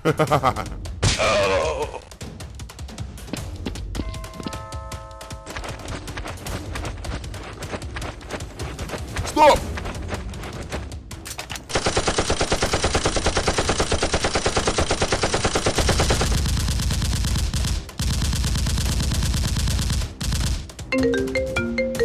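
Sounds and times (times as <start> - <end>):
heavier low-pitched firing: 11.7 - 20.7
rapid automatic gunfire: 11.7 - 20.9.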